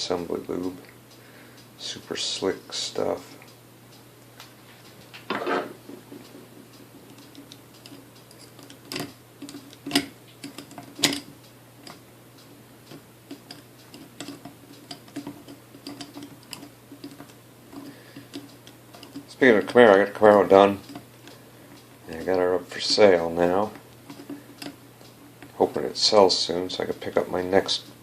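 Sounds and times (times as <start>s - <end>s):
small metal parts clicking and tapping: 6.2s - 12.0s, 12.8s - 27.8s
metal parts knocking: 8.3s - 11.3s.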